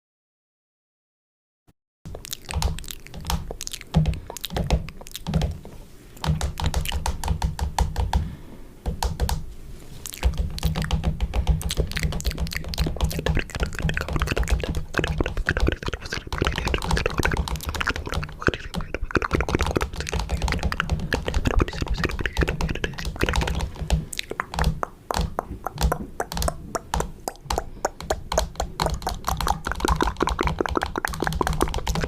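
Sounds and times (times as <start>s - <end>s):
low steady hum: 2.1s - 32.0s
sharp clicks and taps: 6.2s - 9.4s, 10.1s - 32.0s.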